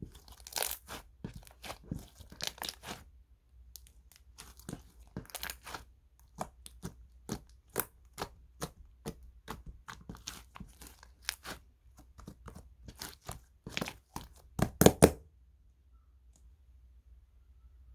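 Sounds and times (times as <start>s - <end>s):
slime squished with pops: 12.2s - 15.2s.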